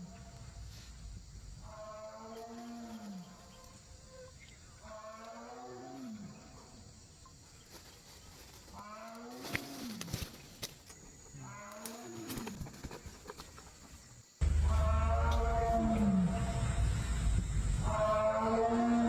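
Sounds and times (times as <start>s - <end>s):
animal's drawn-out call: 14.4s - 16.6s.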